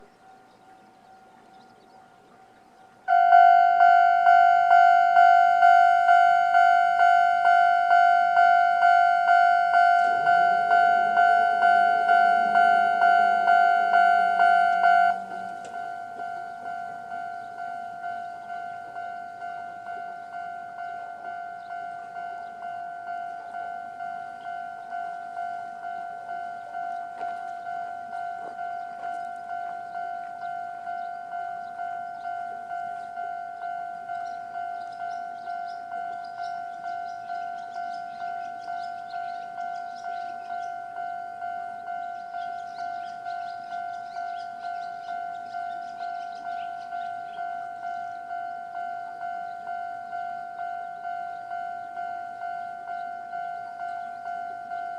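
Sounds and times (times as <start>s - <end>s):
level crossing bell ringing: 0.0s - 54.9s
low hum: 0.0s - 54.9s.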